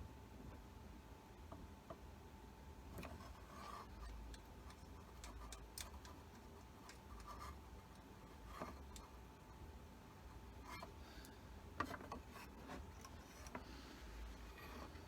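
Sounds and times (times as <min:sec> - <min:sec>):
faint steady hum: 0:00.0 - 0:15.0
small ticks and light scrapes: 0:02.9 - 0:15.0.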